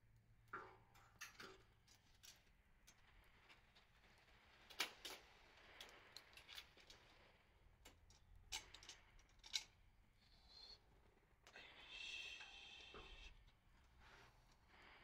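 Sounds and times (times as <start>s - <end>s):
faint hiss: 11.4s - 15.0s.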